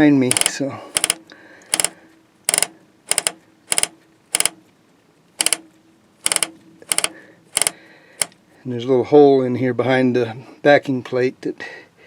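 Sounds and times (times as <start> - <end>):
ratcheting clicks: 0.0 - 4.6, 5.4 - 5.6, 6.2 - 8.4.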